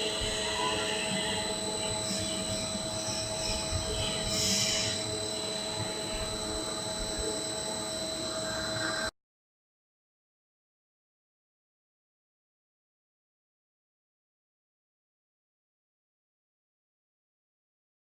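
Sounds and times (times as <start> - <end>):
high whining tones: 0.0 - 9.1
machine hum and hiss: 0.0 - 9.1.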